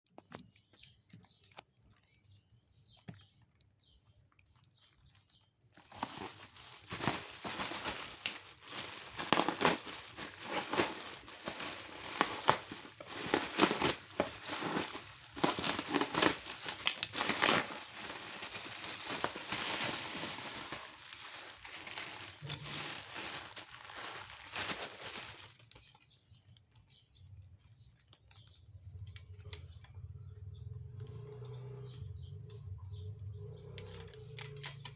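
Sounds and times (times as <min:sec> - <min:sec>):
packaging crinkling and rustling: 0:04.5 - 0:27.0.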